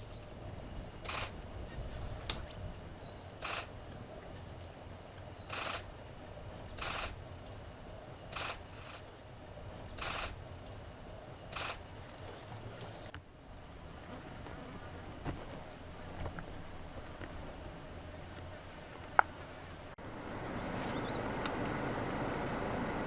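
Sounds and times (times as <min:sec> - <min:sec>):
outdoor background noise: 0:00.0 - 0:23.0
camera shutter firing: 0:01.0 - 0:01.3, 0:03.4 - 0:03.7, 0:08.3 - 0:09.0, 0:11.5 - 0:11.8.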